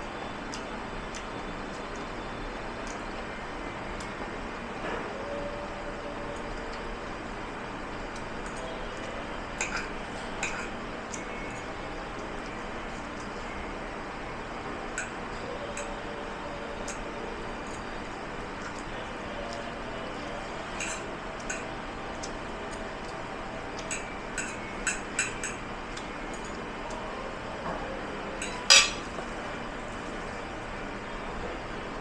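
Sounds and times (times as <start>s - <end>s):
steady background noise: 0.0s - 32.0s
dishes and cutlery clinking: 9.6s - 10.7s, 20.7s - 21.7s, 23.8s - 25.6s, 26.3s - 26.6s, 28.4s - 29.4s.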